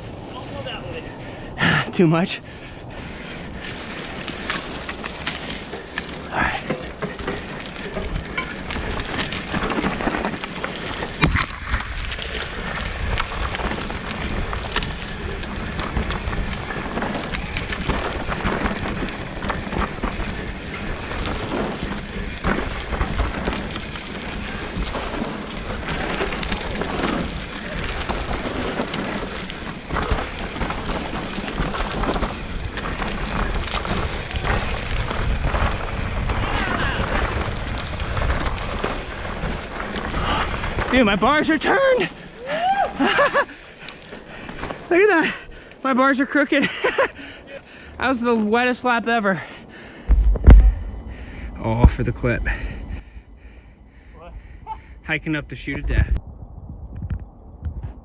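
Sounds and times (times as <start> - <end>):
bike knocking and rattling: 2.6 - 45.7
tyres rumbling over mud: 2.9 - 45.2, 49.5 - 56.2
wind on microphone: 50.0 - 58.0.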